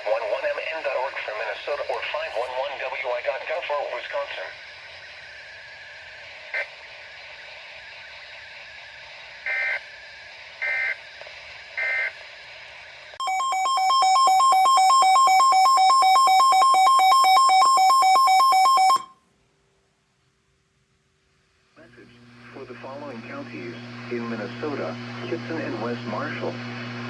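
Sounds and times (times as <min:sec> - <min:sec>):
faint radio hiss: 0:00.0 - 0:13.2, 0:19.1 - 0:27.0.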